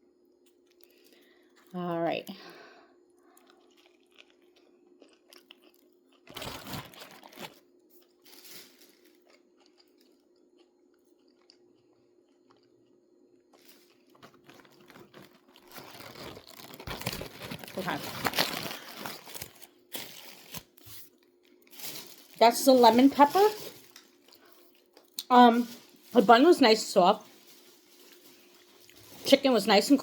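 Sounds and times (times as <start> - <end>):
faint steady hum: 0.0 - 30.0
soft chewing: 0.4 - 1.7, 3.2 - 6.4, 7.0 - 17.2, 23.8 - 25.9
crunching of crispy breading: 3.3 - 26.2.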